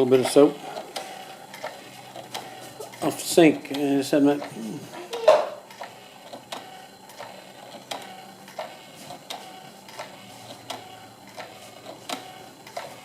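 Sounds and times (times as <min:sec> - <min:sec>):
small motor humming: 0:00.0 - 0:13.0
regular clicking: 0:05.7 - 0:12.9.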